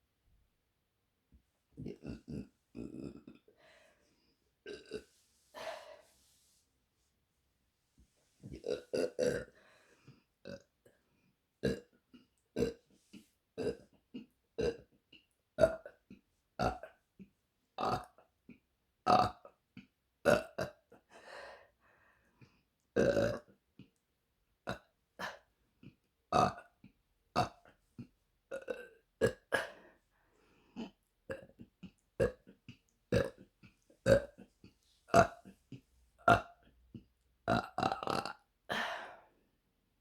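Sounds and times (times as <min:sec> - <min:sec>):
woman burping: 0:01.8 - 0:03.6, 0:04.6 - 0:05.8, 0:08.5 - 0:09.6, 0:23.0 - 0:23.5, 0:27.4 - 0:29.9, 0:30.8 - 0:34.5, 0:35.1 - 0:39.1.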